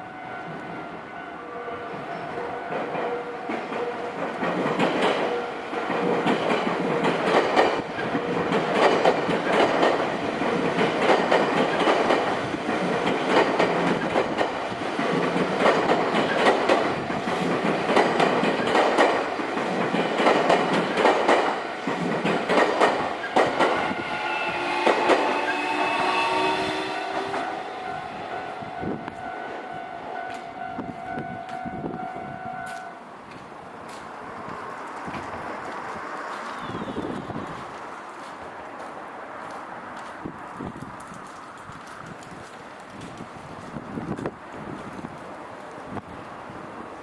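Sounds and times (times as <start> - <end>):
train wheels clattering on rails: 2.7 - 27.5
multi-pitch horn tone: 23.8 - 33.0.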